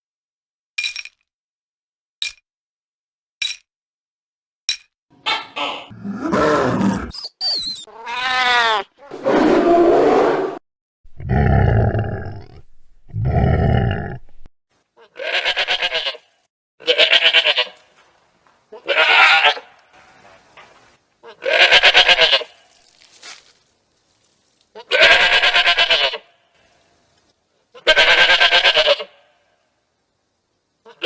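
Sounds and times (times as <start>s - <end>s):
goat bleating: 7.8s - 8.9s, 15.0s - 17.8s, 18.7s - 19.8s, 21.2s - 22.7s, 24.8s - 26.3s, 27.7s - 29.3s.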